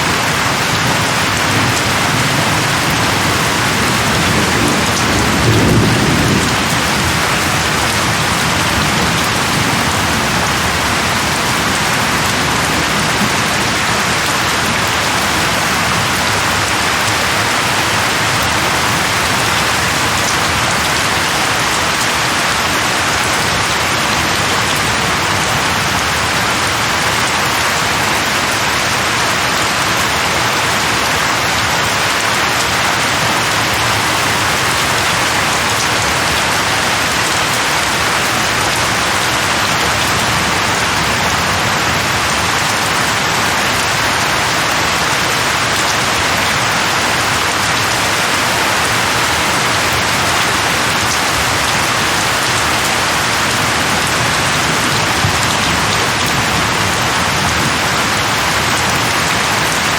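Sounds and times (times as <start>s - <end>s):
heavy rain on leaves: 0.0s - 59.9s
low roll of thunder: 1.8s - 13.6s.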